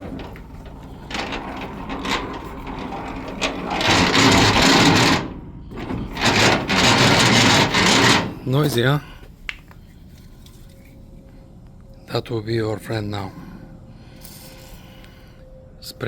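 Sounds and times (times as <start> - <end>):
rusty landing gear grinding: 0.0 - 9.0.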